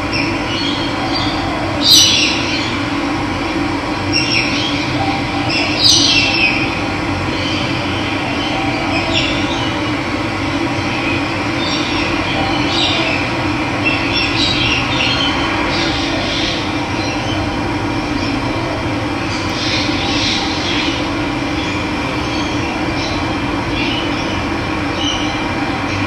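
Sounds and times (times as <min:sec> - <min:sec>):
bird calling: 0:00.1 - 0:02.9, 0:04.1 - 0:09.9, 0:10.8 - 0:18.7.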